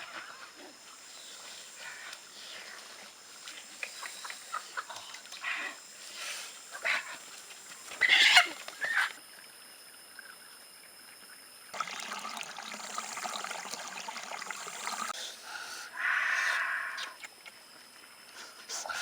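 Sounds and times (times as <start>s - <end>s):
water trickling and splashing: 0.0s - 9.2s, 11.8s - 15.2s
chicken squawking: 8.0s - 9.1s.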